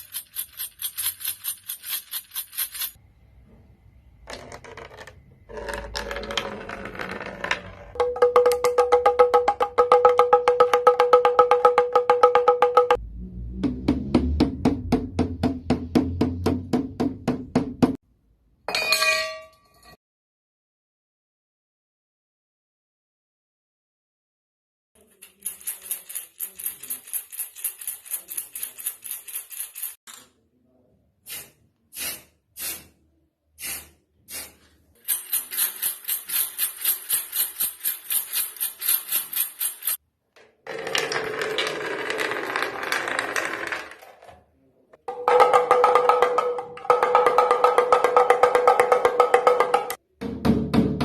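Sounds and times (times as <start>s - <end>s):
percussion rattle with jingle: 0.0s - 3.0s, 25.0s - 30.0s, 35.0s - 40.0s.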